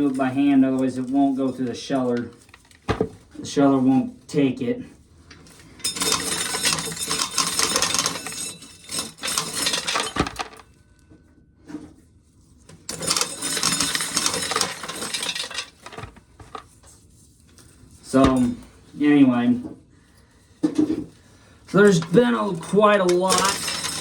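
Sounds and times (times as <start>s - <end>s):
corn kernels clinking into a pail: 5.9s - 10.6s, 12.9s - 16.6s, 21.7s - 24.0s.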